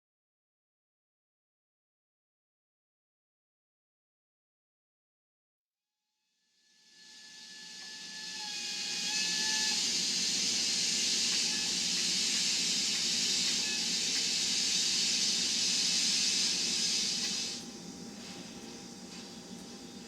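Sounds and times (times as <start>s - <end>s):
steam hiss from small speaker: 6.7s - 20.0s.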